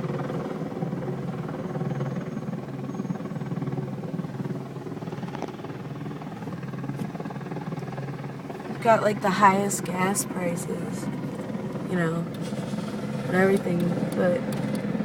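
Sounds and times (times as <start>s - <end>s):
car driving drone from inside: 8.6s - 15.0s.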